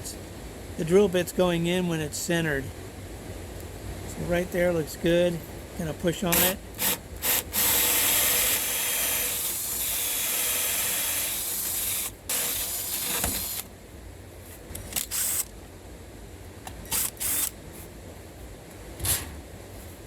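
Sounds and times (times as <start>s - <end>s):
drill motor whining: 6.3s - 13.7s, 15.0s - 15.5s, 16.9s - 17.5s
hole saw cutting wood: 6.3s - 13.7s.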